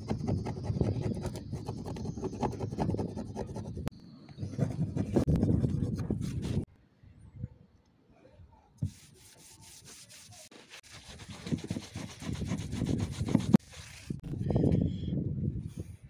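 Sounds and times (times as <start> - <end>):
rubbing or scraping by hand: 0.0 - 6.7, 8.8 - 14.7.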